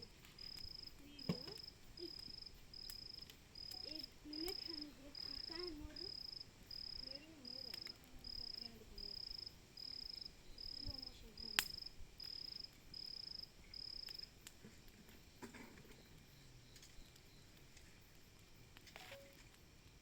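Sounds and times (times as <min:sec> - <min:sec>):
cricket chirping: 0:00.0 - 0:20.0
faint voices murmuring: 0:06.9 - 0:09.3.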